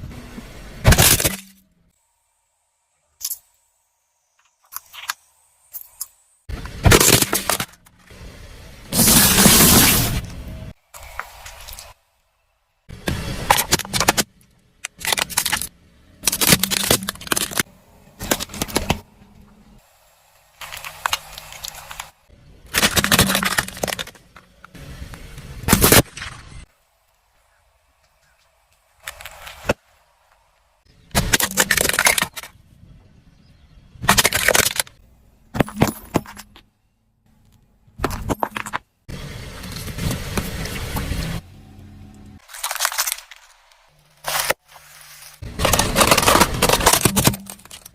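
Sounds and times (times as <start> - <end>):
objects crunching under car tyres: 6.7 - 7.9, 13.1 - 19.5, 20.6 - 24.8, 28.8 - 30.5, 42.4 - 47.9.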